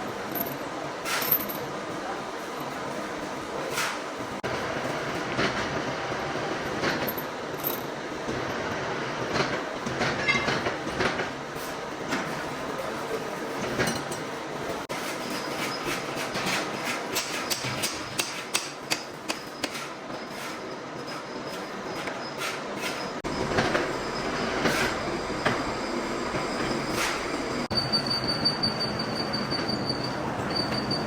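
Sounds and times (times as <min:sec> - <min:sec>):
steady machine noise: 0:23.2 - 0:31.0
metal on metal squealing whine: 0:23.3 - 0:31.0.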